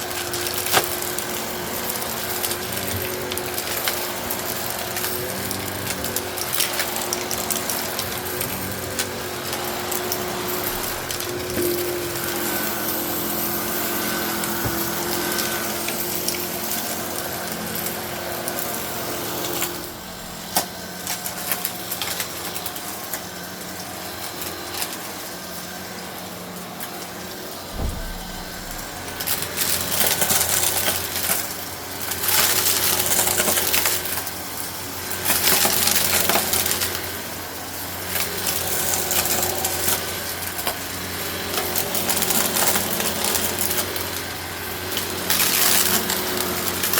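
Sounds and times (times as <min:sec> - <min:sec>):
upright vacuum running over carpet: 0:00.0 - 0:46.9
gravel rattling through vacuum: 0:19.4 - 0:21.2, 0:27.7 - 0:30.0
low bump: 0:19.8 - 0:20.6, 0:27.7 - 0:29.8.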